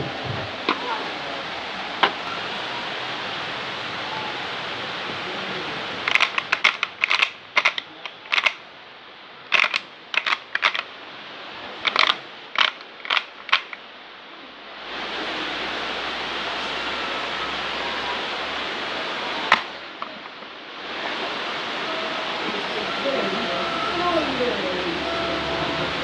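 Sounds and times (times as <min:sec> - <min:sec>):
steady hiss: 0:00.0 - 0:26.0
sharp irregular clicks and taps: 0:06.1 - 0:08.6, 0:09.5 - 0:10.8.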